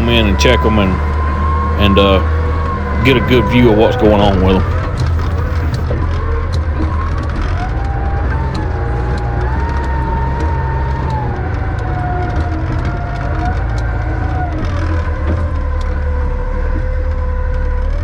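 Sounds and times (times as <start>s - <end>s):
diesel engine rumbling under load: 0.0s - 5.8s
engine whine: 0.0s - 16.2s.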